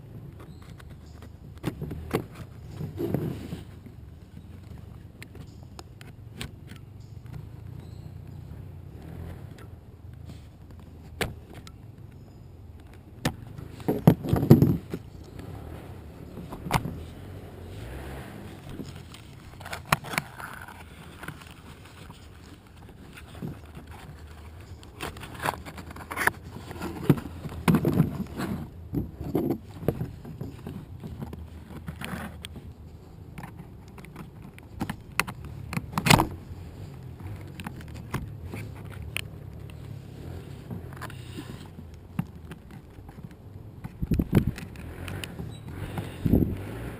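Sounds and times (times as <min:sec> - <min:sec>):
toy parts clattering and rustling: 0:10.3 - 0:17.1, 0:18.5 - 0:46.4.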